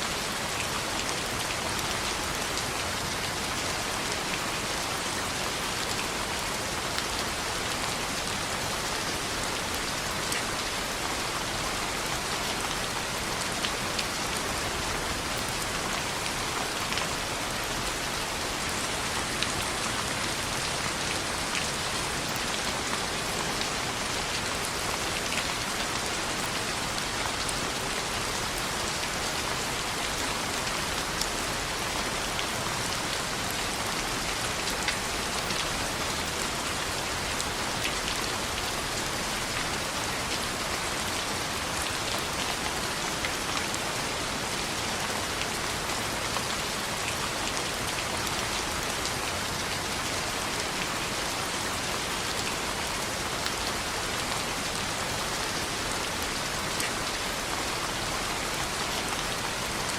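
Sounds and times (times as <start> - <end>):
rain on a window: 0.0 - 59.9.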